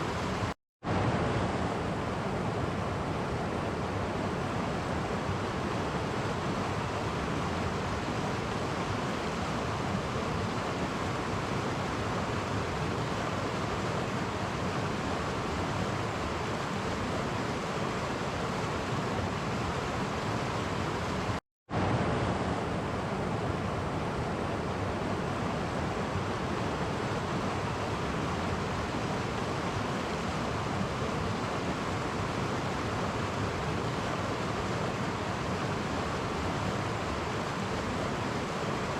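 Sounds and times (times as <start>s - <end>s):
stream flowing over cascades: 0.0s - 38.9s.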